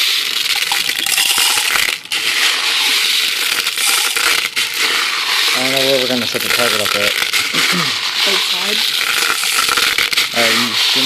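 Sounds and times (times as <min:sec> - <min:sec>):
compressed air hissing: 0:01.2 - 0:11.0.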